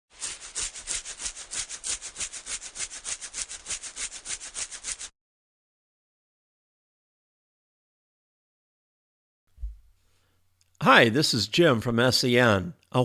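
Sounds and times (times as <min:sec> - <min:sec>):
fast rasping strokes: 0:00.1 - 0:05.1.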